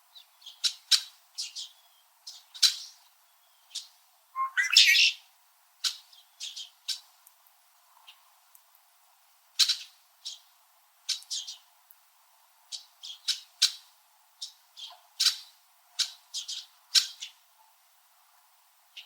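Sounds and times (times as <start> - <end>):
blackbirds chirping: 0.0 - 7.2, 9.6 - 11.8, 12.6 - 17.5.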